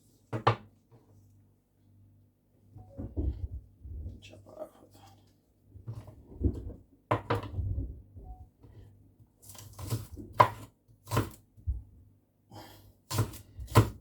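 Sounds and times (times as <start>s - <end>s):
knife chopping on cutting board: 9.4s - 11.4s, 13.1s - 14.0s.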